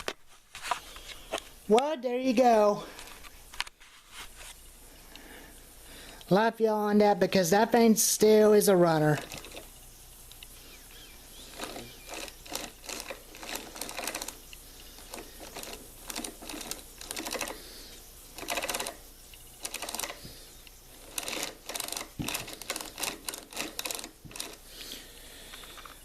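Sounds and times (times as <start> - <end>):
plastic and metal parts clattering: 9.1 - 9.7, 11.5 - 17.6, 18.4 - 19.0, 19.6 - 20.4, 21.0 - 24.7, 25.5 - 26.0.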